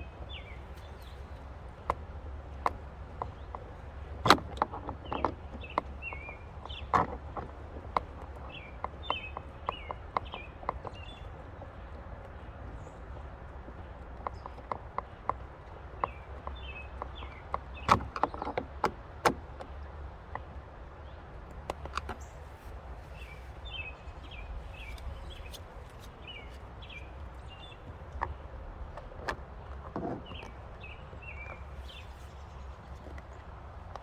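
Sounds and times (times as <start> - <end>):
small bird chirping: 5.0 - 18.4, 22.0 - 29.0, 30.2 - 33.4.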